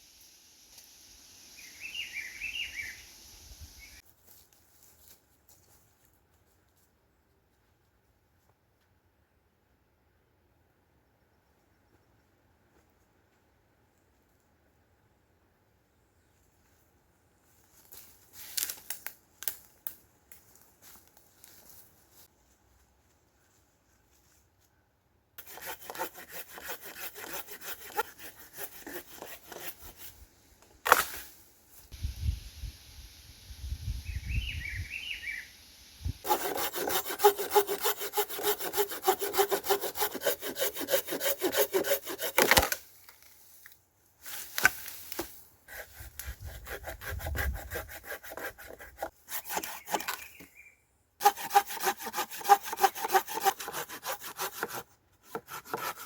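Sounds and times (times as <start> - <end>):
hand saw cutting wood: 25.4 - 30.2, 36.2 - 42.8, 45.6 - 50.4, 51.2 - 56.0.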